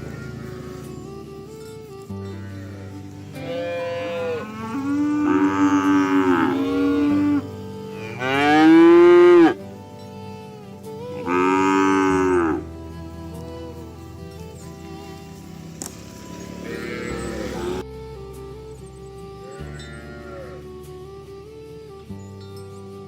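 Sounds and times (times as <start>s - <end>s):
cattle mooing: 0.0s - 9.6s, 11.1s - 12.7s, 15.1s - 17.8s
soft background music: 0.0s - 23.0s.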